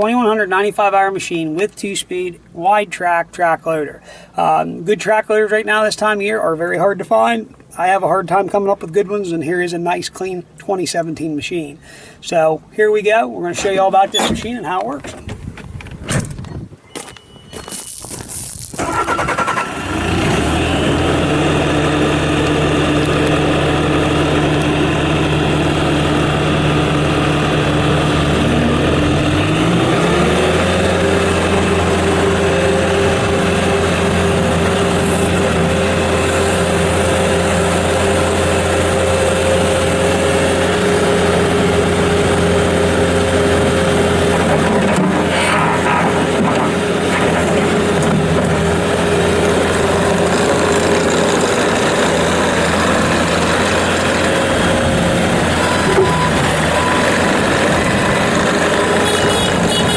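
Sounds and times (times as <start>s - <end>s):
diesel engine starting: 18.3s - 59.9s
diesel engine idling: 18.4s - 59.9s
engine revving higher: 18.8s - 59.9s.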